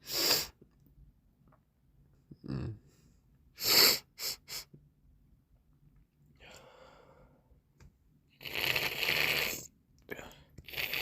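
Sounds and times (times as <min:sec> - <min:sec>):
person blowing runny nose: 0:00.0 - 0:00.6, 0:03.6 - 0:04.6, 0:08.4 - 0:09.6
person sniffing: 0:00.0 - 0:00.6, 0:03.6 - 0:04.7
person breathing: 0:06.4 - 0:07.6.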